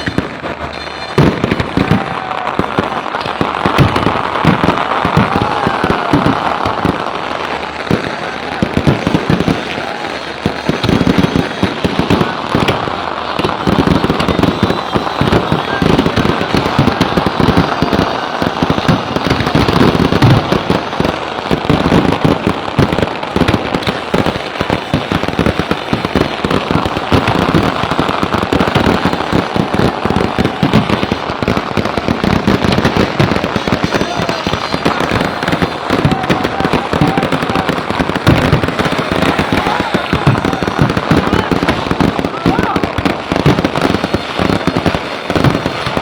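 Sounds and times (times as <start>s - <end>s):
firecrackers banging and crackling: 0.0s - 46.0s.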